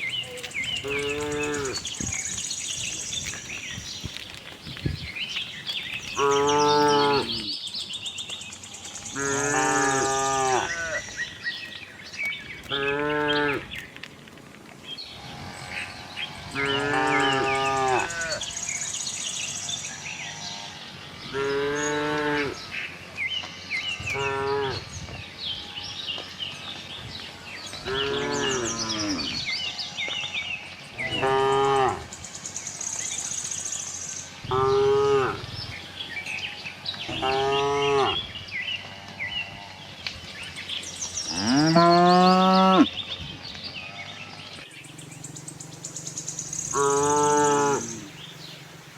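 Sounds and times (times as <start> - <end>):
cows mooing: 0.4 - 2.2, 6.1 - 7.6, 9.1 - 11.1, 15.6 - 18.5, 20.3 - 22.6, 27.8 - 30.0, 31.0 - 32.1, 34.4 - 35.5, 37.1 - 38.3, 41.2 - 43.0, 43.9 - 48.8.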